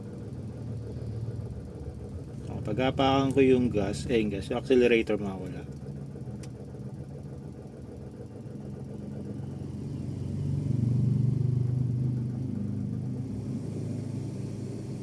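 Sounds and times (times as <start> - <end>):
car engine idling and revving: 0.0 - 15.0
low engine rattling: 0.0 - 15.0.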